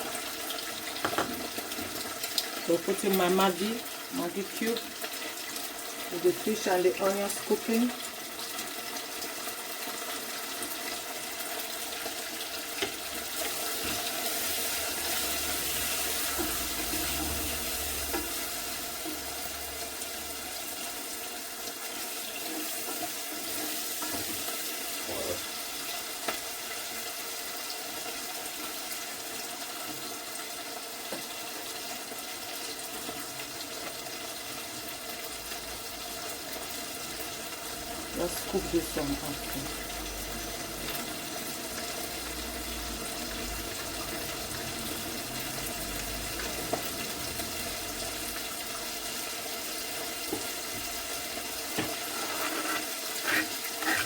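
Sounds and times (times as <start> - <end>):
fish and onions sizzling in oil: 0.0 - 54.0.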